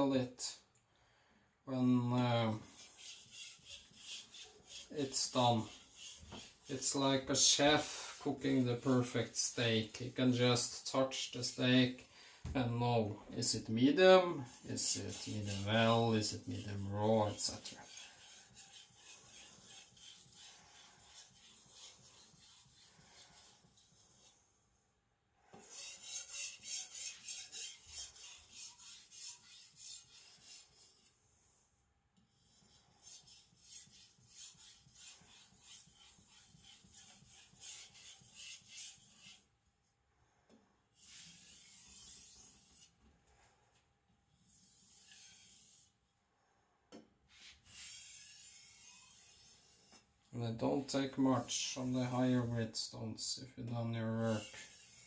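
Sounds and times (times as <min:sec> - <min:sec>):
knife scraping on whetstone: 0:02.6 - 0:10.3, 0:14.5 - 0:24.4, 0:25.6 - 0:31.1, 0:32.4 - 0:39.5, 0:41.0 - 0:43.0, 0:44.4 - 0:46.0, 0:47.4 - 0:50.1, 0:54.2 - 0:55.0.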